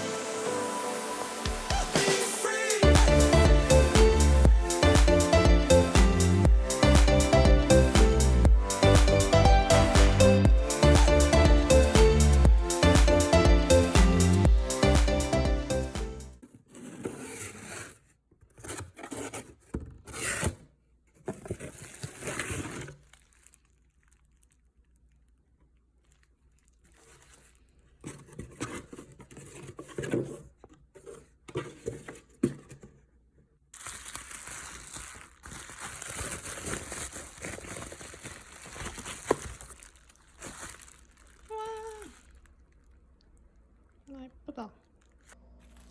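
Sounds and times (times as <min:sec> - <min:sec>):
paper rustling: 0:33.8 - 0:42.4
cardboard packaging tearing: 0:33.8 - 0:42.7.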